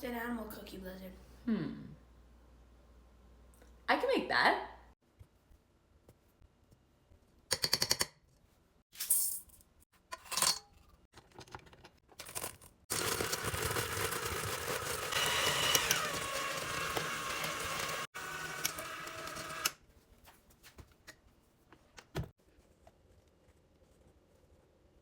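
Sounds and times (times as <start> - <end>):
kitchen clatters and rustles: 8.9 - 14.9
blender running: 12.9 - 19.8.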